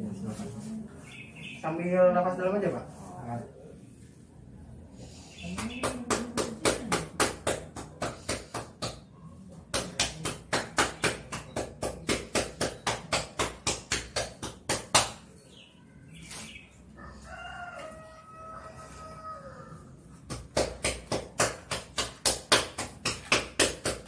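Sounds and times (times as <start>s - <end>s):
cupped-hand clapping on back: 5.4s - 15.2s, 20.2s - 24.0s
rooster crowing: 16.9s - 20.0s.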